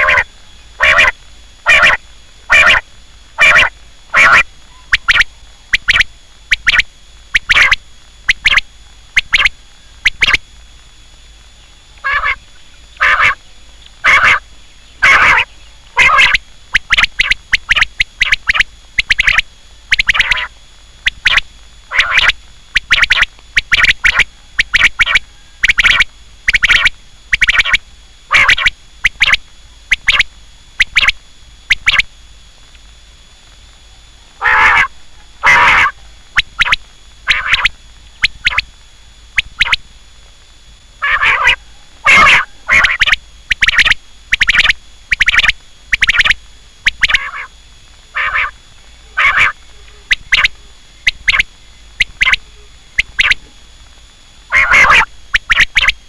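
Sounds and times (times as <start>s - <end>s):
quail calling: 0.0s - 10.4s, 12.0s - 12.4s, 13.0s - 13.4s, 14.0s - 20.5s, 21.1s - 32.1s, 34.4s - 38.6s, 41.0s - 47.5s, 48.1s - 53.5s, 54.5s - 56.0s.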